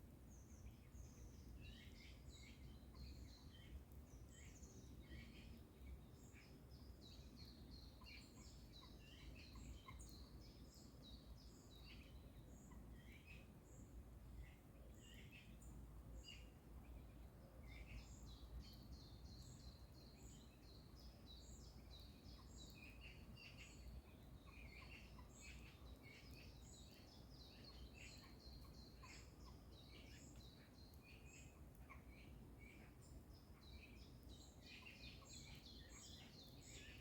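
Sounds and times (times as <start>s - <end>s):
birds chirping: 0.3s - 37.0s.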